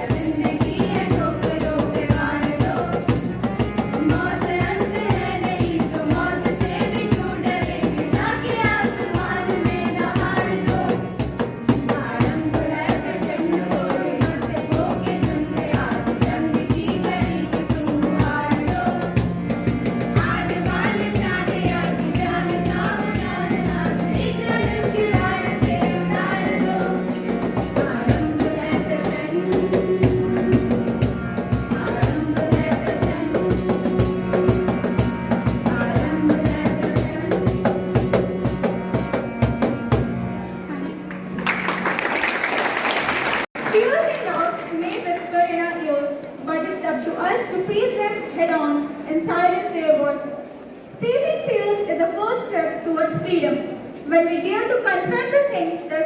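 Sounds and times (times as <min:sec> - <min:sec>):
fast percussion: 0:00.0 - 0:40.3.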